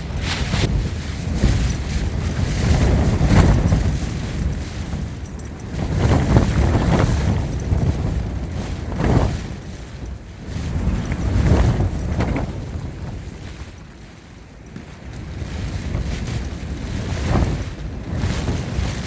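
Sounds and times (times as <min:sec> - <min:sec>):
gusting wind on microphone: 0:00.0 - 0:19.0.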